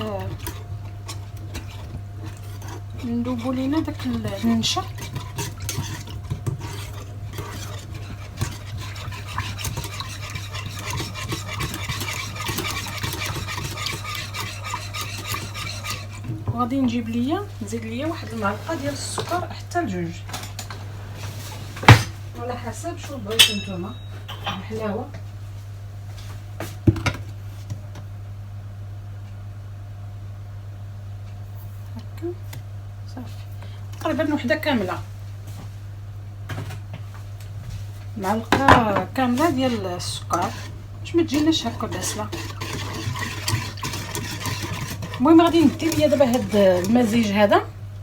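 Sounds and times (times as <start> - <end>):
whisk scraping a container: 0.0 - 19.5, 38.2 - 47.7
steady low hum: 0.0 - 48.0
spoon clinking against bowl: 23.4 - 24.6.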